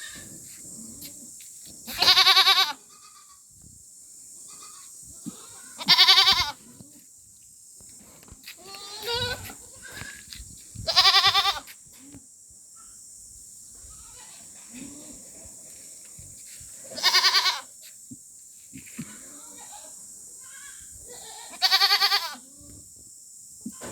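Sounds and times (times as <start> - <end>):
goats bleating: 1.9 - 3.3, 4.5 - 6.6, 8.6 - 10.2, 10.9 - 11.6, 17.0 - 17.7, 20.5 - 22.4.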